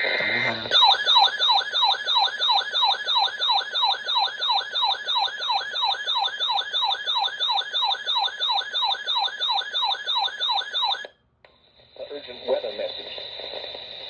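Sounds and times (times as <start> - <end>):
electronic alert siren sweeps: 0.1 - 11.0.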